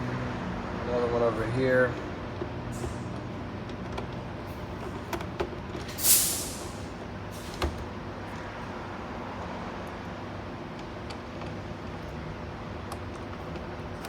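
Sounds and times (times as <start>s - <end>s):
short hissing burst: 5.9s - 7.5s.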